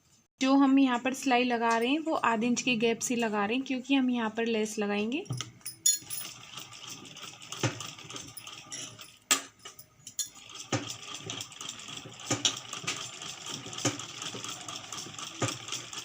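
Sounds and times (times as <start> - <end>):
sewing machine stitching: 6.1 - 9.2, 10.3 - 16.0.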